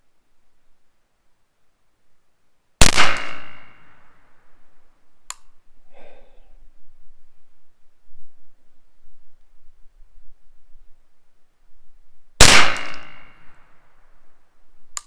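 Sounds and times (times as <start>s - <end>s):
rifle shot: 2.8s - 4.1s, 12.4s - 13.6s.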